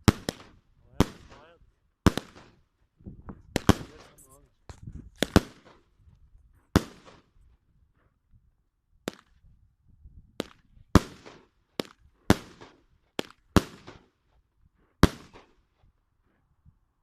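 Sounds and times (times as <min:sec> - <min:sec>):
fireworks bangs: 0:03.5 - 0:04.4.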